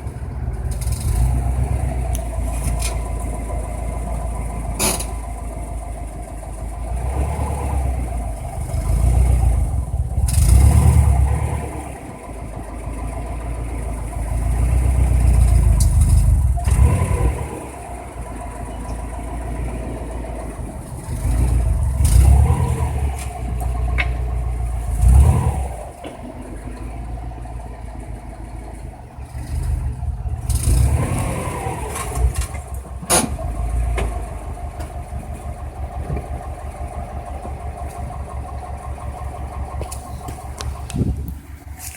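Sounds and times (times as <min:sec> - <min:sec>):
car engine rumble: 0:00.0 - 0:41.9.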